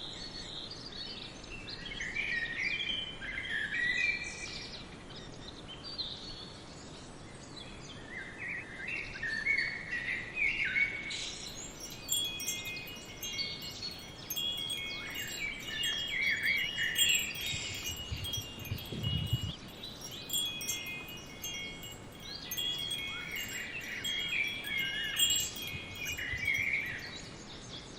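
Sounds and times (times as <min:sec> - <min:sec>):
birds chirping: 0:11.4 - 0:27.2
wind chimes ringing: 0:11.4 - 0:27.2.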